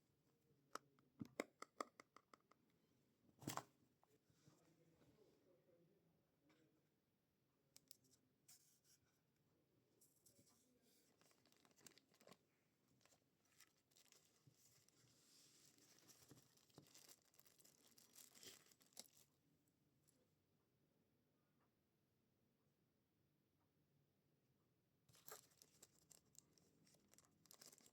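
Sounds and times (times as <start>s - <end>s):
small clicks and taps: 0.8s - 2.7s
packaging rustling and crinkling: 11.0s - 19.3s, 25.1s - 27.9s.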